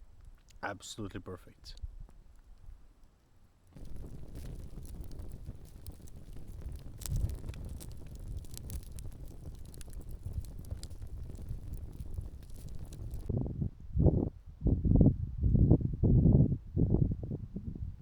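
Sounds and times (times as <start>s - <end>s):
sharp crackles and clicks: 1.7s - 13.3s
wind buffeting the microphone: 3.8s - 18.0s.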